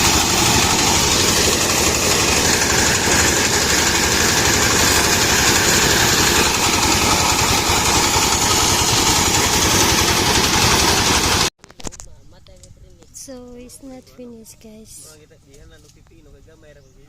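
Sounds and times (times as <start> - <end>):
farm machine engine running: 0.0 - 11.5.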